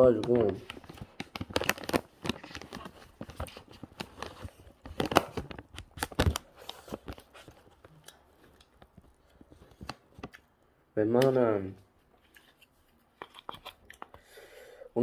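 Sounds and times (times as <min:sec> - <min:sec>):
sharp clicks and crinkly rustles: 0:00.0 - 0:10.5.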